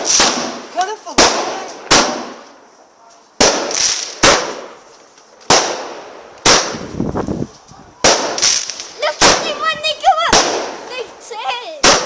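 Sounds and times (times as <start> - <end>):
fireworks bangs: 0.0 - 2.7, 3.3 - 12.0.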